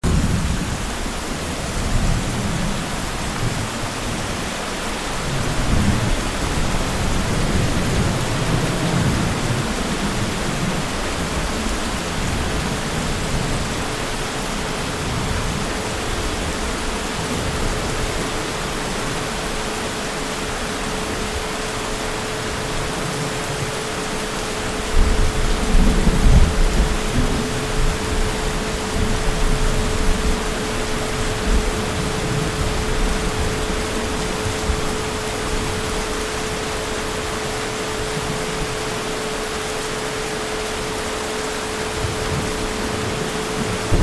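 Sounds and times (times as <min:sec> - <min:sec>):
distant thunder rolling: 0:00.0 - 0:19.2, 0:42.0 - 0:44.0
heavy rain: 0:00.0 - 0:44.0.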